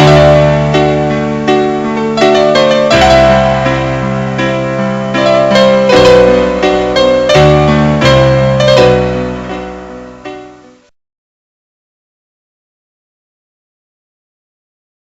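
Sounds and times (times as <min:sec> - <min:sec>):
piano playing chords: 0:00.0 - 0:10.9.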